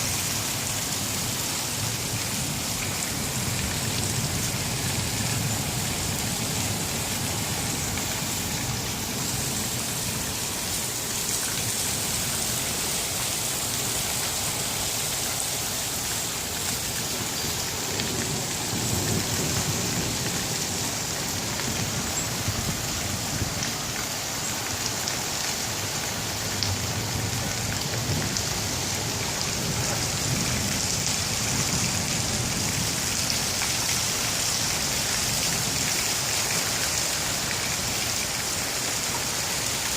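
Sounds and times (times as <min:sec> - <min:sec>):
rain pattering on hard surfaces: 0:00.0 - 0:39.9
thunder rumbles: 0:17.9 - 0:22.7.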